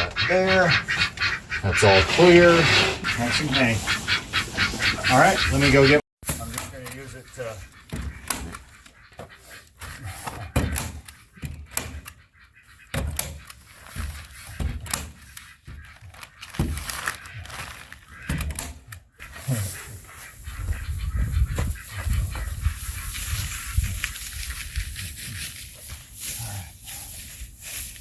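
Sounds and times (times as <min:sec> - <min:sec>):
handling noise: 0:06.2 - 0:12.2, 0:12.8 - 0:26.9
irregular knocks and thuds: 0:07.8 - 0:12.2, 0:12.9 - 0:19.0.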